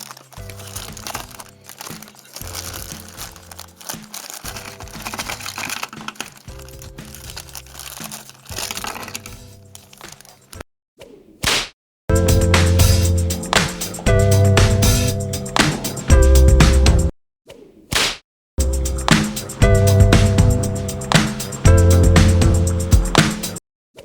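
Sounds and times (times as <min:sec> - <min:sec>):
background music: 0:00.0 - 0:10.0, 0:12.1 - 0:17.1, 0:18.6 - 0:23.6
toy packaging crinkling: 0:00.0 - 0:10.6.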